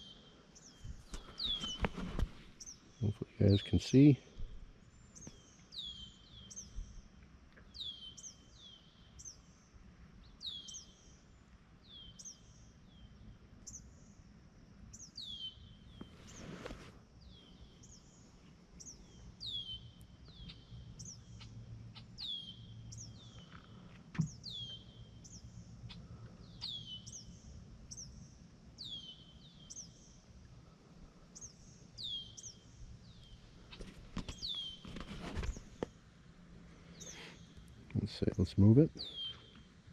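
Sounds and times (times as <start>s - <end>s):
bird chirping: 0.0s - 2.0s, 2.6s - 7.0s, 7.7s - 9.6s, 10.3s - 11.2s, 14.9s - 16.4s, 17.2s - 30.2s, 31.4s - 35.8s, 36.8s - 39.7s
outdoor background noise: 0.0s - 39.9s.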